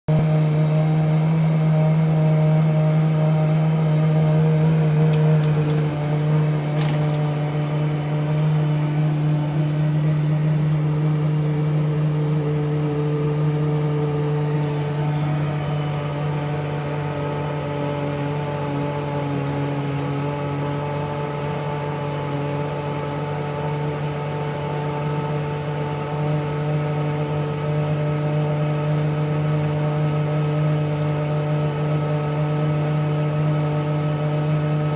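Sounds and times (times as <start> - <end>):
water heater droning hum: 3.4 - 17.3.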